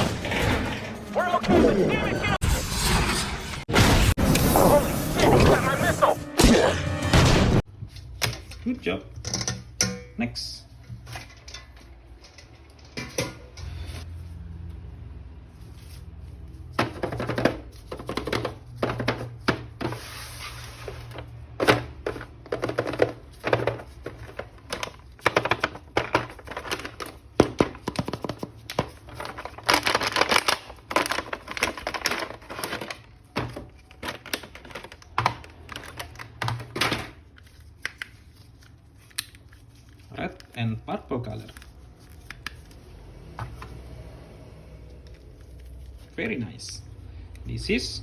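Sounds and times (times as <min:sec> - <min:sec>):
packaging crinkling and tearing: 0:28.5 - 0:36.4, 0:37.2 - 0:43.0.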